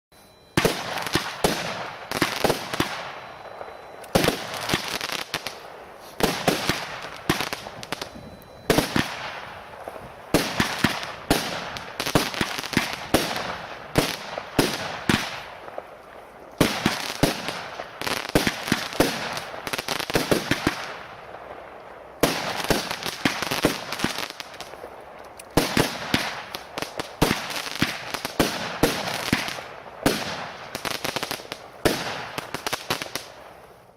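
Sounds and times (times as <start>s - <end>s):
firework crackling: 0.2s - 33.9s
firework bangs: 0.3s - 33.8s.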